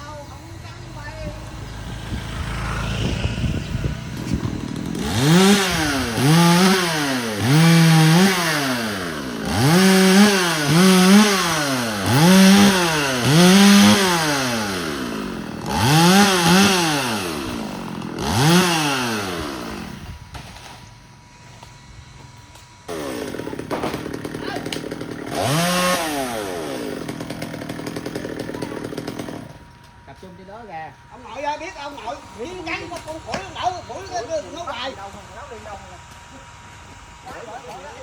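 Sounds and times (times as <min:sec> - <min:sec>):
chainsaw revving: 0:00.3 - 0:21.2, 0:22.9 - 0:30.1, 0:31.0 - 0:38.0.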